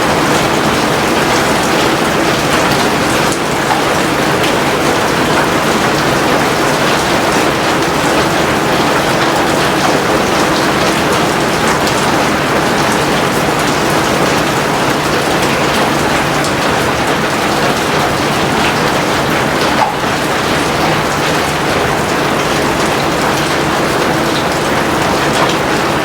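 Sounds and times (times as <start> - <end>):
heavy rain falling: 0.0 - 26.0.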